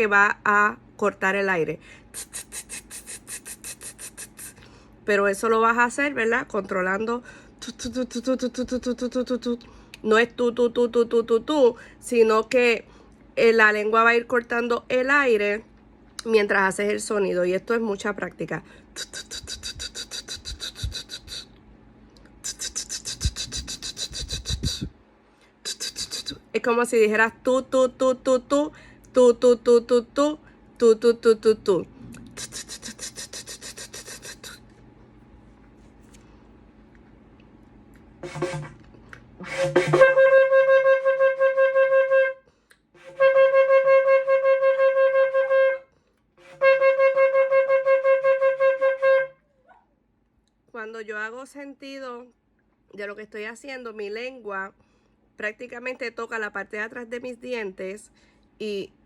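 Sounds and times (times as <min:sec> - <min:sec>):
rapid tongued breath puffs: 0:01.8 - 0:05.0, 0:18.7 - 0:21.6, 0:22.4 - 0:26.4, 0:32.3 - 0:34.7
shofar blasts: 0:38.2 - 0:38.8, 0:39.4 - 0:42.4, 0:43.0 - 0:49.4.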